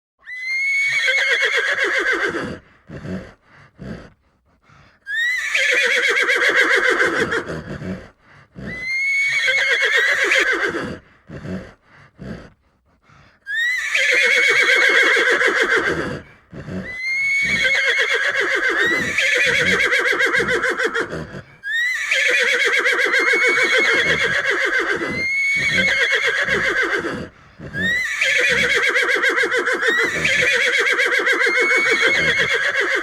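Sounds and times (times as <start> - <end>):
horse whinnying: 0.2 - 4.1, 5.1 - 12.5, 13.5 - 33.0
horse breathy snorts: 2.4 - 5.1, 7.3 - 8.9, 10.3 - 13.5, 15.0 - 17.8, 21.0 - 21.6, 24.0 - 28.8.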